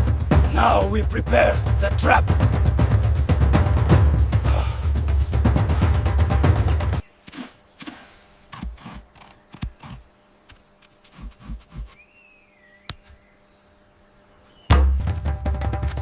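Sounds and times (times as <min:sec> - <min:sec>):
drum music: 0:00.0 - 0:07.0, 0:14.7 - 0:16.0.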